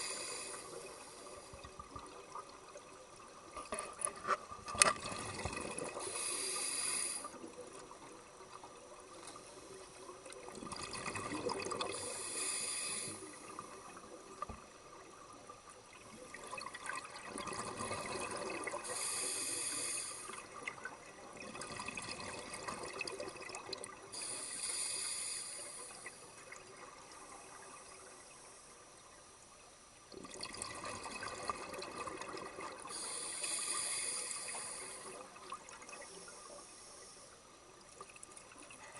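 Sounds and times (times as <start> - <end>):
water bubbling and trickling: 1.6 - 6.1, 10.2 - 12.1, 13.4 - 18.8, 20.3 - 24.1, 30.1 - 32.9.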